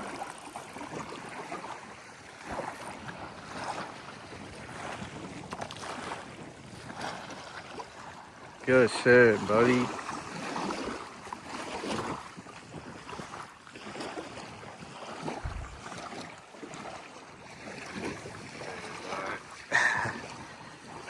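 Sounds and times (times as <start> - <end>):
lapping water: 13.0 - 21.0
short low thump: 15.4 - 15.9
wind rushing on microphone: 15.4 - 16.0.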